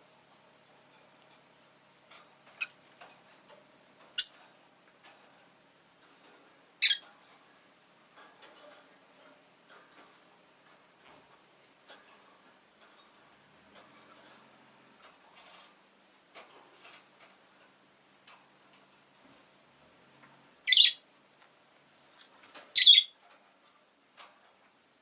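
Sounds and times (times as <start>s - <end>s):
lovebirds shrill calls: 4.2s - 4.4s, 6.8s - 7.0s, 20.6s - 21.0s, 22.8s - 23.2s
soft clicks and ticks: 8.1s - 20.5s.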